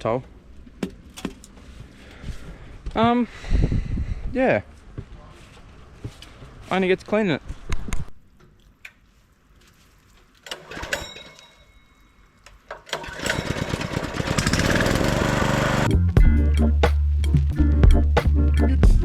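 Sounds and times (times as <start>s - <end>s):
pressure washer motor running: 12.9s - 15.9s.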